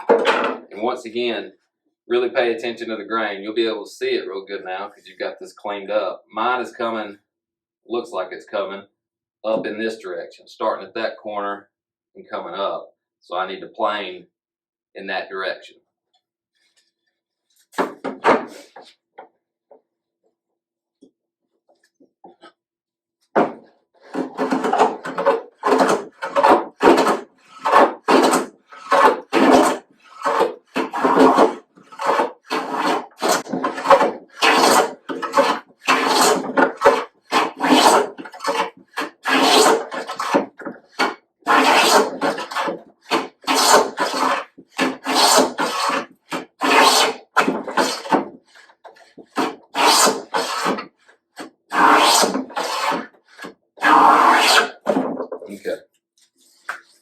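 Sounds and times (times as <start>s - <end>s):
hand plane shaving wood: 23.4s - 55.1s.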